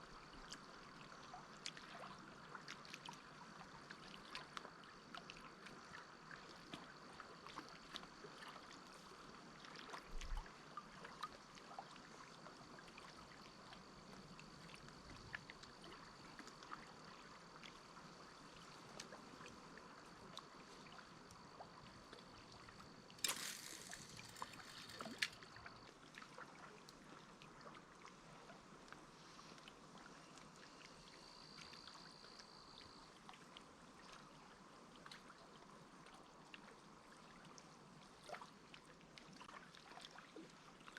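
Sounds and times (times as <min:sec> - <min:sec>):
water lapping and trickling: 0:00.0 - 0:40.9
small clicks and knocks: 0:23.2 - 0:25.5.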